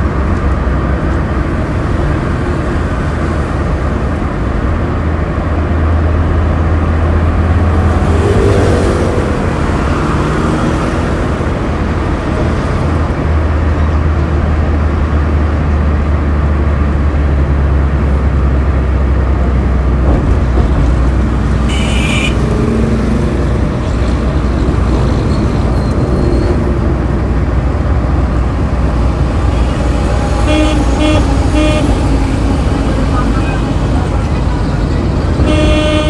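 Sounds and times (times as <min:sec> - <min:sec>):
road traffic rumble: 0:00.0 - 0:36.0
quick horn toots: 0:21.6 - 0:23.3, 0:28.6 - 0:36.0
vehicle horn: 0:21.6 - 0:23.3, 0:28.5 - 0:36.0.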